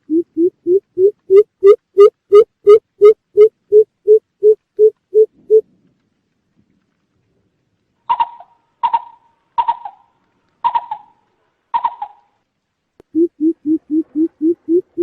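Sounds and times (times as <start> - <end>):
bird clicking calls: 8.1 - 12.3
bird deep hoots: 13.2 - 15.0.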